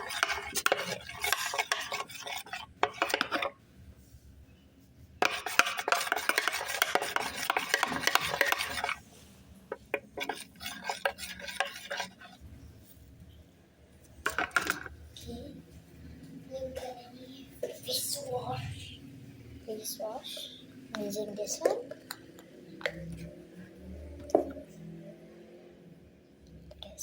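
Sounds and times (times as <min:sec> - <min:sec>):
utensil scraping in a bowl: 0:00.0 - 0:03.6, 0:05.2 - 0:12.4.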